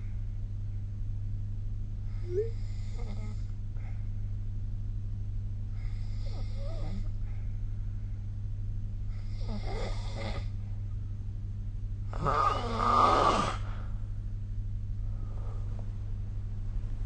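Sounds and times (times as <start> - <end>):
steady low hum: 0.0 - 17.0
person snoring: 2.2 - 3.5, 9.2 - 10.5, 12.1 - 13.8.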